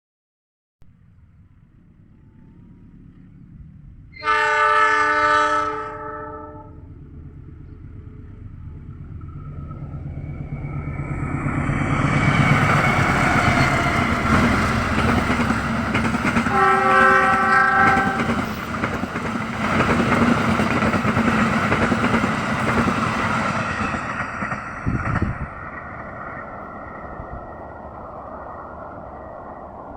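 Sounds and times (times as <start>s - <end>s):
train passing rumble: 0.9s - 29.9s
train horn blast: 4.1s - 6.9s, 16.4s - 18.4s.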